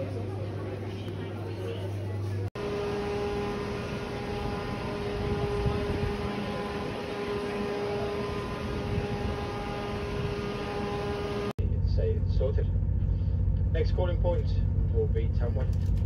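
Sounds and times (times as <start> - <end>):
train carriage rumble: 0.0 - 11.5
motor hum: 2.6 - 11.6.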